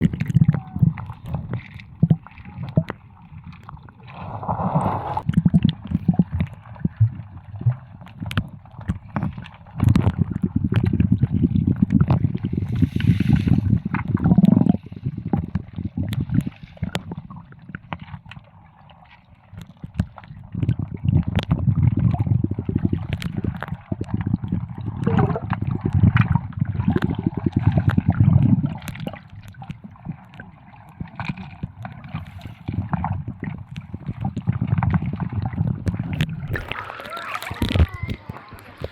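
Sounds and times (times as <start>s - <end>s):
seawater splashing at shore: 36.1s - 38.9s.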